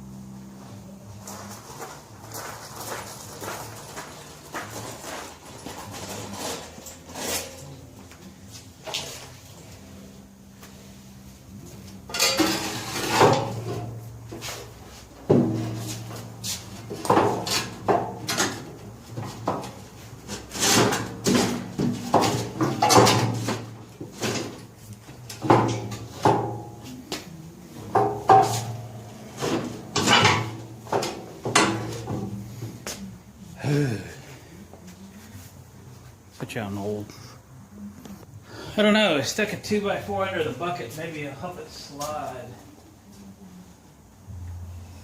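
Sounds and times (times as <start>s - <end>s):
heavy metal parts clunking and scraping: 1.4s - 9.7s, 11.7s - 33.0s.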